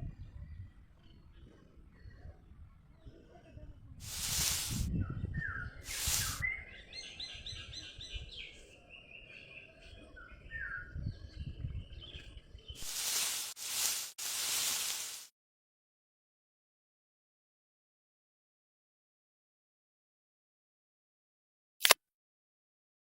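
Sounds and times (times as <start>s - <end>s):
loud bursts of hiss: 4.0s - 4.9s, 5.9s - 6.4s, 12.8s - 15.3s
birds chirping: 5.6s - 11.4s.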